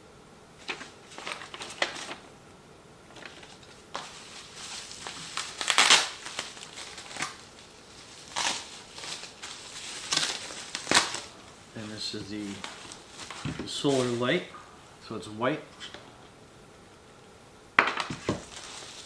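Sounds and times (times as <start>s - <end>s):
packaging crinkling: 0.6s - 2.4s, 3.0s - 14.5s, 17.8s - 19.0s.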